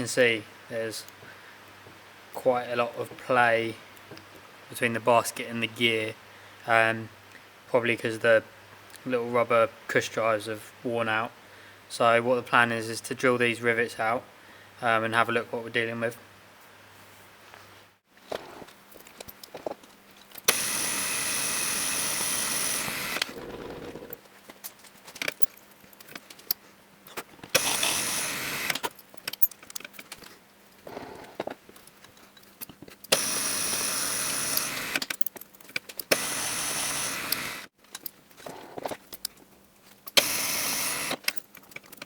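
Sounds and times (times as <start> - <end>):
electric drill whining: 20.5 - 24.1, 27.6 - 28.8, 33.1 - 35.0, 36.1 - 37.7, 40.2 - 41.2
metal parts clinking: 28.7 - 30.8, 34.6 - 36.1.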